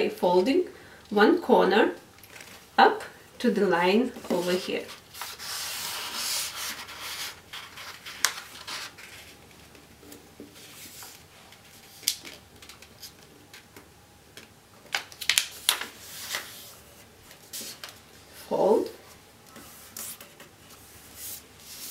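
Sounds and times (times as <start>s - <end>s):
paper rustling and rubbing: 4.2s - 9.8s, 15.9s - 18.0s, 19.5s - 21.9s.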